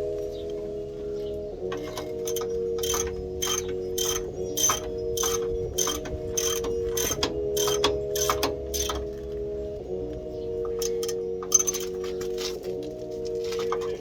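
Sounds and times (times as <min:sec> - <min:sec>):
steady hum: 0:00.0 - 0:13.8
ratchet wrench clicking: 0:01.8 - 0:09.1, 0:10.8 - 0:11.9.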